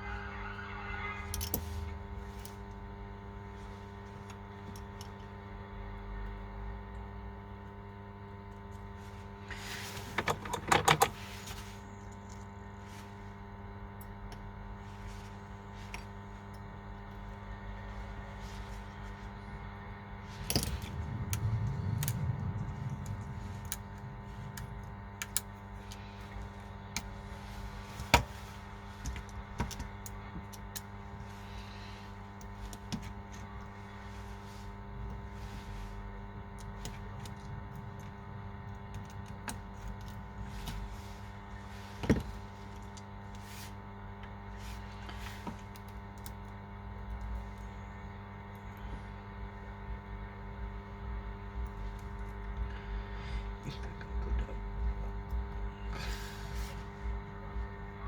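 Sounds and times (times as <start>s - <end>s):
steady electrical hum: 0.0s - 58.0s
clicks of tools and phone parts: 1.2s - 1.7s, 10.2s - 11.2s.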